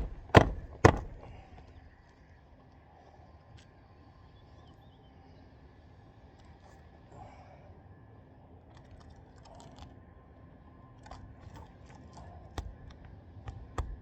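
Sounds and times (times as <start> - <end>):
hammer striking nail: 0.0 - 1.4
shingle clicking and rustling: 0.0 - 1.6.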